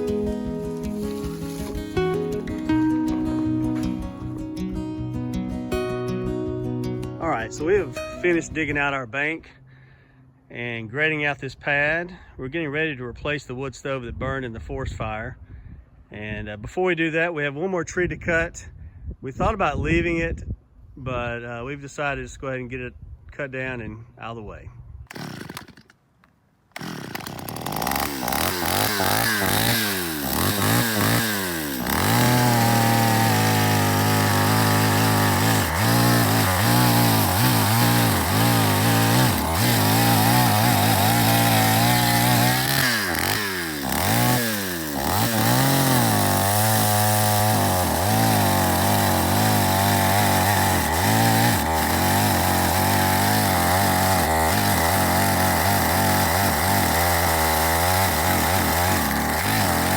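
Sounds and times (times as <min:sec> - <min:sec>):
chainsaw cutting: 0:00.0 - 0:04.4, 0:25.1 - 0:26.0, 0:26.7 - 0:59.9.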